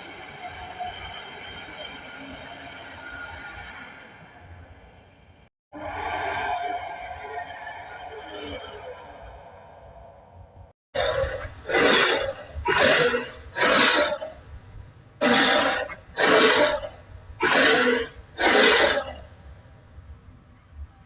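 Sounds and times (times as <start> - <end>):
harsh raspy dinosaur roars: 11.0 - 14.5, 15.2 - 19.3.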